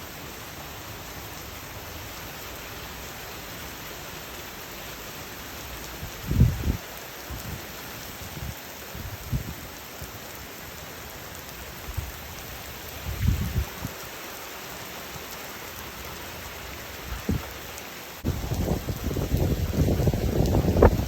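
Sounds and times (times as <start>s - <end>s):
heavy rain hissing: 0.0s - 21.0s
wind gusting on microphone: 6.0s - 9.7s, 11.9s - 14.0s, 17.0s - 21.0s.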